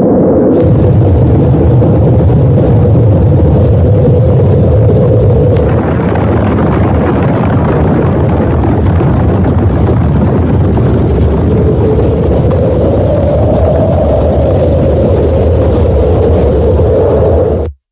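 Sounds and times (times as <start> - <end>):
explosion rumbling roar: 0.0 - 17.8
wavering drone: 11.2 - 17.7.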